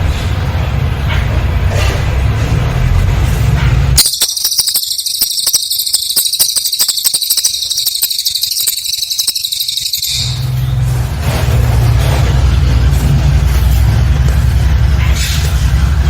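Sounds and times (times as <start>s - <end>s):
bird singing high trill: 4.0s - 10.8s.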